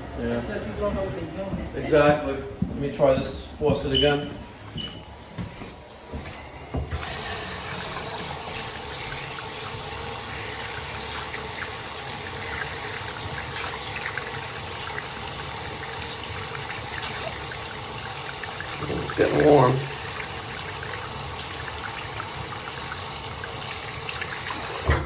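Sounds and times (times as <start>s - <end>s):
faucet water rushing into sink: 6.9s - 25.0s.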